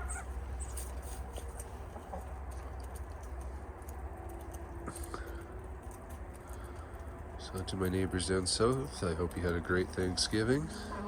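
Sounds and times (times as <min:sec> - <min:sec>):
hens clucking: 0:00.0 - 0:03.4, 0:05.0 - 0:11.0.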